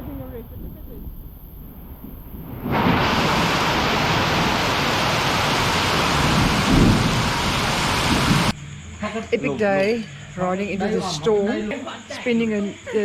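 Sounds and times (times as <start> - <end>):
low thunder rumble: 0.0 - 8.6
heavy rain pouring: 2.3 - 8.6.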